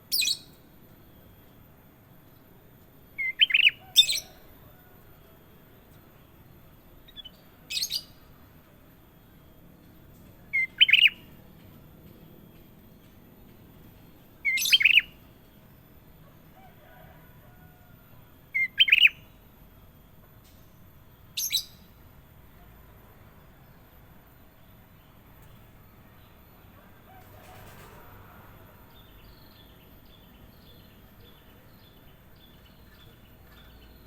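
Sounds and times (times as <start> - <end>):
bulbul calling: 10.5 - 11.3, 14.4 - 15.2, 18.6 - 19.2.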